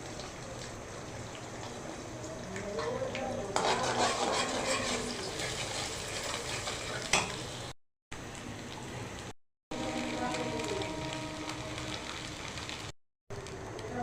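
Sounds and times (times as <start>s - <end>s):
food sizzling in a frying pan: 0.0s - 14.0s
spatula scraping a pan: 3.6s - 7.2s.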